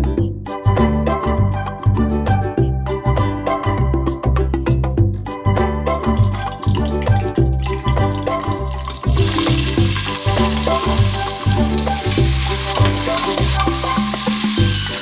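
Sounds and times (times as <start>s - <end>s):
background music with bass beat: 0.0s - 15.0s
food sizzling in hot oil: 6.2s - 15.0s.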